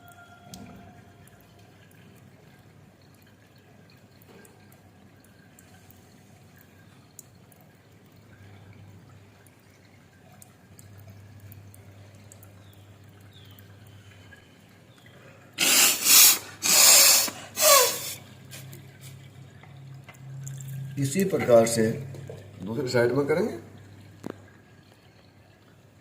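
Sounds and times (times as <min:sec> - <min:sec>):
water trickling and dripping: 0:00.0 - 0:26.0
breath blown hard through nose: 0:15.6 - 0:18.8.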